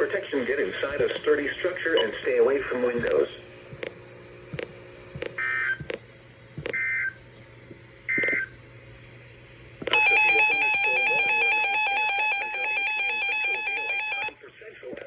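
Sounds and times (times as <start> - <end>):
electronic alarm tone stepping pitches: 9.9 - 14.4
modem-like data tone screech: 9.9 - 14.4.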